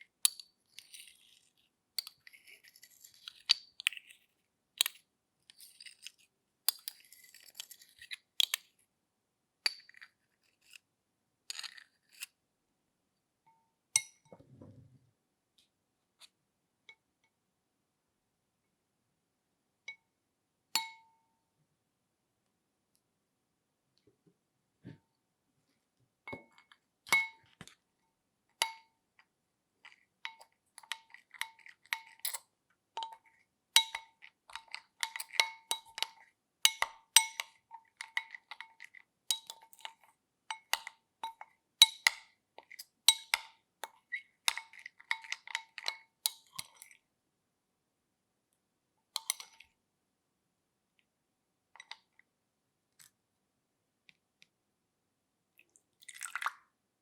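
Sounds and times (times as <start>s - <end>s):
clinks on small resonant container: 33.8s - 47.0s.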